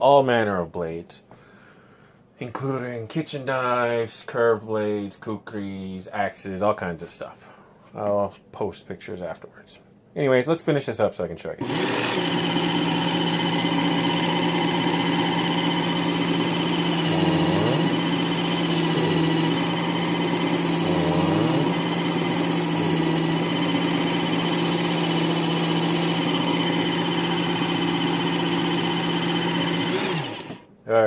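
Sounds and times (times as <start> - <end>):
sharpener motor whine: 11.6 - 30.6.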